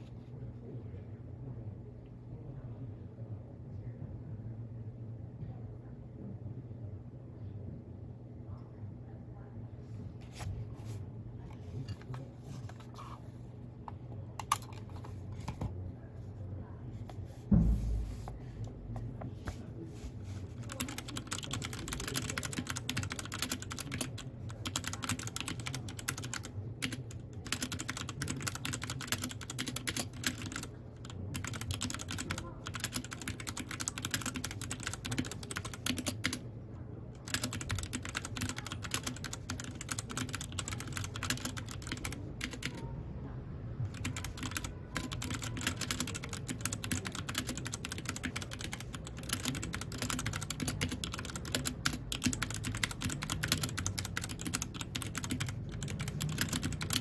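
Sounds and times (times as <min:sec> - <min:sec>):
mechanical keyboard typing: 0:14.4 - 0:15.6, 0:20.6 - 0:36.4, 0:37.2 - 0:42.8, 0:43.9 - 0:57.0.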